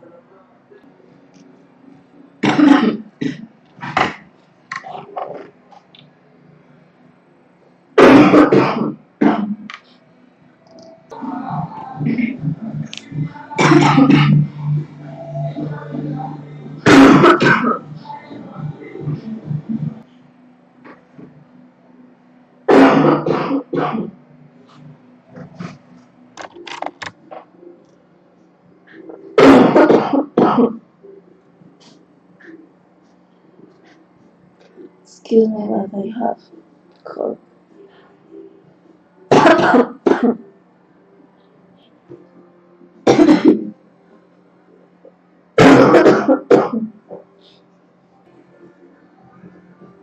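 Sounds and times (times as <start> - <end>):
girl coughing: 22.7 - 24.1, 43.1 - 43.7.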